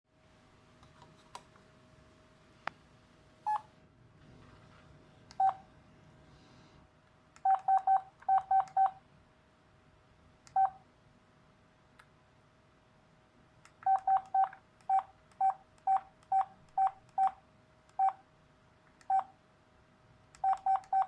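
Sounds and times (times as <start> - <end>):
phone key-press beeps: 7.4 - 9.0, 13.8 - 17.4, 19.1 - 19.3, 20.4 - 21.0.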